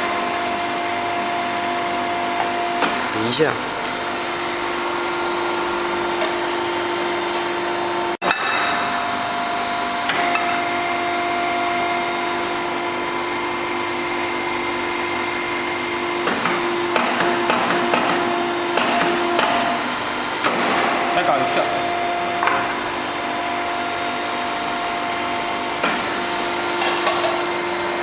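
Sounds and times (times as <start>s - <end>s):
machine motor whine: 8.8s - 28.0s.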